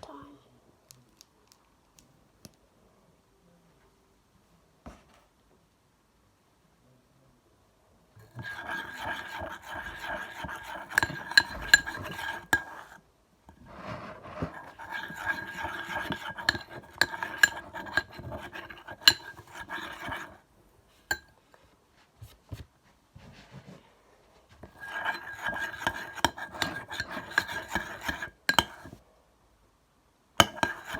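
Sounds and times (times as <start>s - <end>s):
spoon stirring and scraping thick mix: 8.2s - 21.4s, 22.2s - 23.8s, 24.4s - 29.0s, 30.4s - 30.9s
spoon clinking on container: 8.4s - 12.9s, 14.6s - 20.3s, 24.8s - 29.0s, 30.4s - 30.9s.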